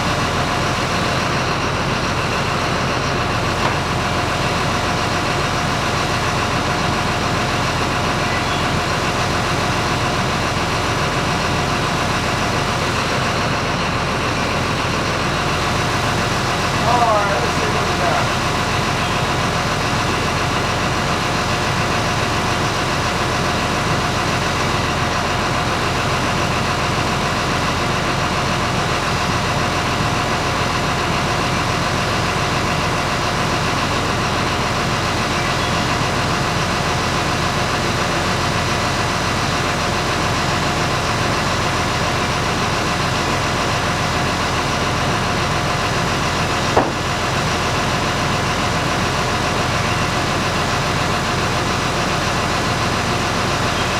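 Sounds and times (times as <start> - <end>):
engine idling: 0.0 - 53.9
sharp knock: 46.8 - 47.0.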